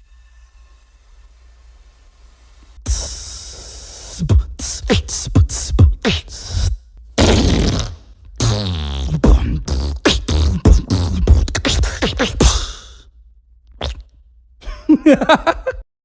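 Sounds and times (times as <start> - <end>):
beatboxing: 2.8 - 13.1, 13.8 - 14.1.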